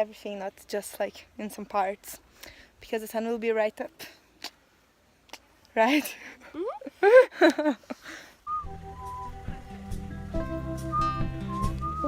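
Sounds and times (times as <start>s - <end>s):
light melody: 8.5s - 12.0s.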